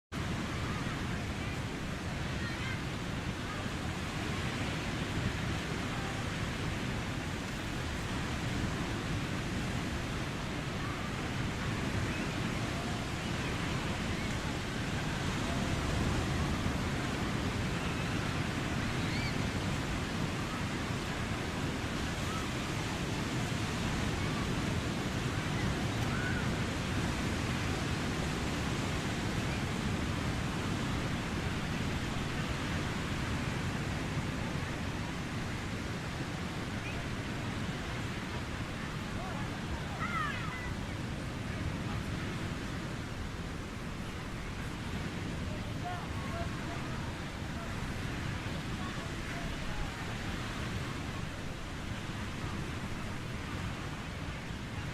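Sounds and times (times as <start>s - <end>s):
surf breaking on a beach: 0.1s - 54.9s
distant children's voices: 0.2s - 9.6s, 10.5s - 30.0s, 36.0s - 43.0s.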